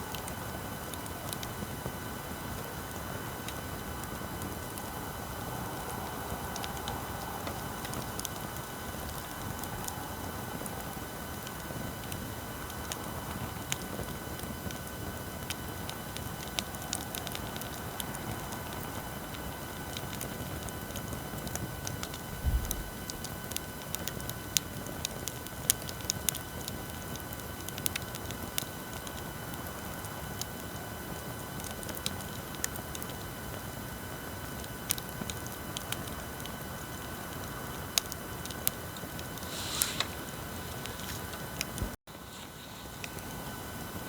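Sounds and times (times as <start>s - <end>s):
electrical hum and whine: 0.0s - 44.0s
wood fire crackling and popping: 0.0s - 44.0s
short hiss: 39.4s - 43.4s.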